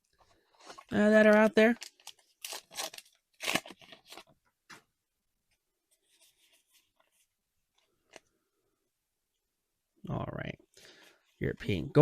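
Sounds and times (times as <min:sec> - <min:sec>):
cards rubbing and shuffling: 0:00.6 - 0:04.3
foil wrapper crinkling: 0:00.9 - 0:04.3.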